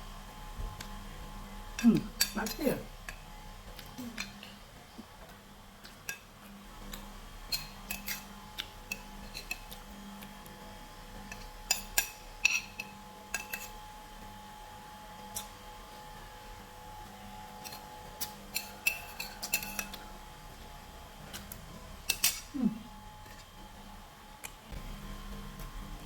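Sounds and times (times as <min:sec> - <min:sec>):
utensils clinking against dishes: 0:01.8 - 0:03.2, 0:03.8 - 0:04.6, 0:06.9 - 0:09.9, 0:11.2 - 0:13.8, 0:17.6 - 0:20.1, 0:21.3 - 0:23.5.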